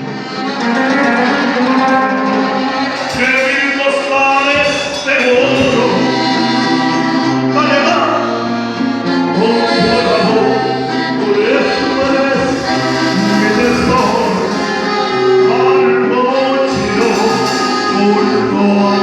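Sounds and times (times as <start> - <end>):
band playing a song: 0.0 - 19.0
voices singing together: 0.0 - 19.0
steady bass line: 8.4 - 16.1, 16.7 - 18.6.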